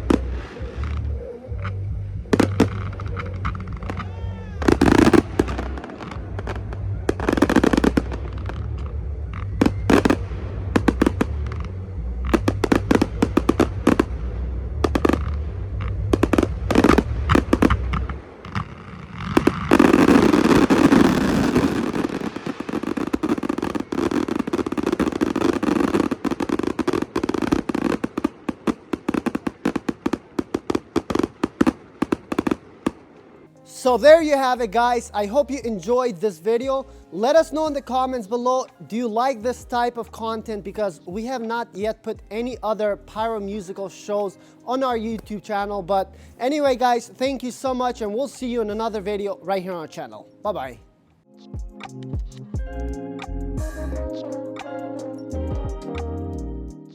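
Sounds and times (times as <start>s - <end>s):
firework crackling pops: 0.0s - 1.8s, 2.4s - 14.2s, 14.8s - 33.9s
low steady rumble: 0.0s - 18.5s
firework shells bursting: 2.4s - 33.5s.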